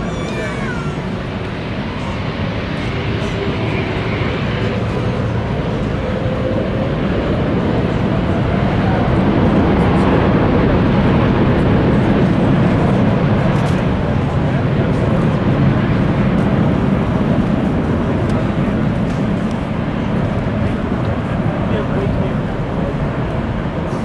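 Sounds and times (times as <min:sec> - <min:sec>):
voices chattering: 0:00.0 - 0:06.1
jet engines roaring: 0:00.0 - 0:24.0.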